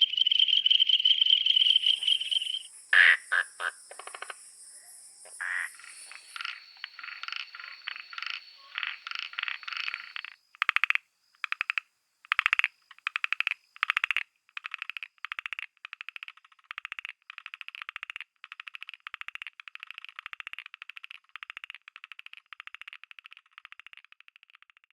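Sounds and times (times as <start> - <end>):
thin steady high tone: 0.0 - 3.0
frogs pulsed calls: 0.0 - 24.6.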